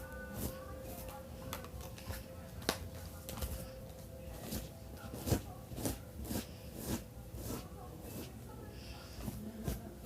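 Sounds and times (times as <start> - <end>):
comb scratching through hair: 4.3 - 10.0.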